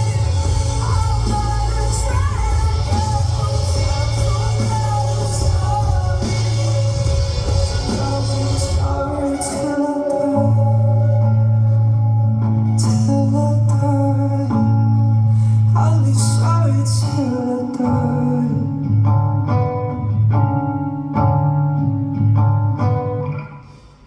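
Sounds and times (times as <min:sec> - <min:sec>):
bass and chords: 0:00.0 - 0:17.2
person singing: 0:00.0 - 0:19.6.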